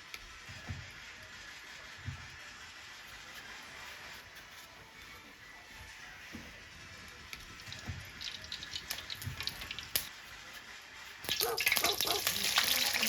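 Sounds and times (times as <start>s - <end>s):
water dripping: 11.3s - 13.0s.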